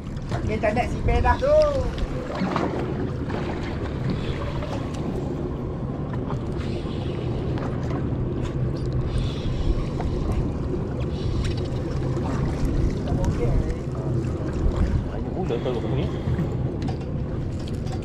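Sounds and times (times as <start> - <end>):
wind on microphone: 0.0 - 5.4, 9.0 - 18.0
boat engine humming: 0.0 - 18.0.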